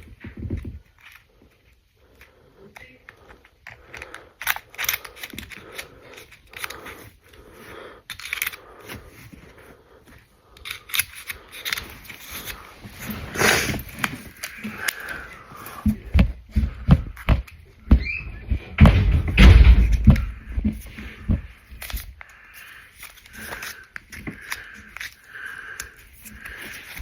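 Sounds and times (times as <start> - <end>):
burst of noise: 18.0 - 20.6.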